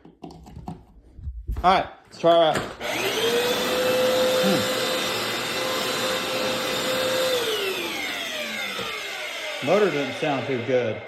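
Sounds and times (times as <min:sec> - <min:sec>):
floor cleaner motor whine: 0:02.8 - 0:11.0.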